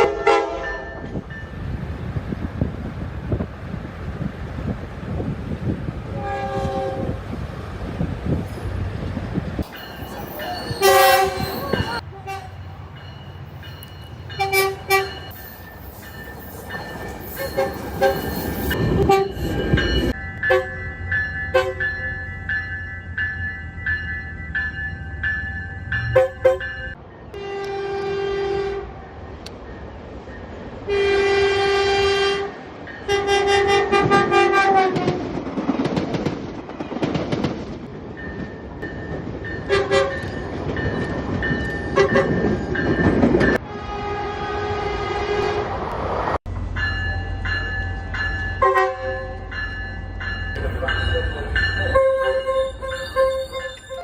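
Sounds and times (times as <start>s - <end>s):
train horn blasts: 0.0s - 1.0s, 6.1s - 7.2s, 10.6s - 12.7s, 14.3s - 15.3s, 17.4s - 19.6s, 20.5s - 20.8s, 21.5s - 21.8s, 26.1s - 26.7s, 27.4s - 29.0s, 30.9s - 35.2s, 43.6s - 45.8s, 48.6s - 49.4s, 51.9s - 54.0s
train rumbling: 0.0s - 54.0s.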